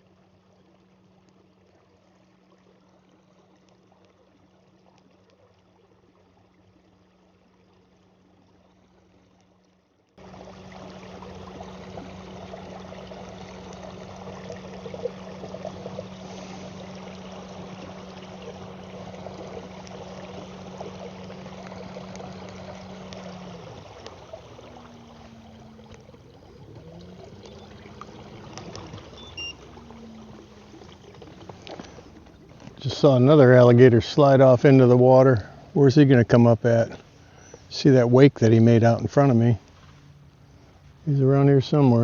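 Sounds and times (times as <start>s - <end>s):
wavering tones: 10.2s - 35.8s
steady low hum: 10.2s - 42.0s
water rushing along kayak hull: 10.2s - 42.0s.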